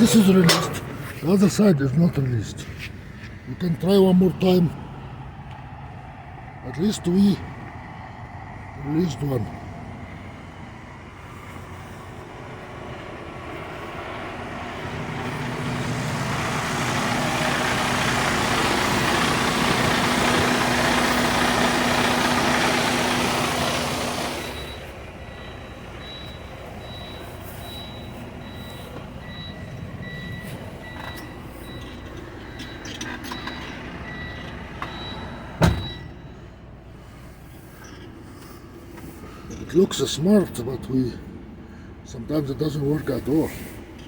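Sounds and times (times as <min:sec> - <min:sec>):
semi truck rushing hissing noise: 0:07.2 - 0:31.6, 0:33.8 - 0:44.0.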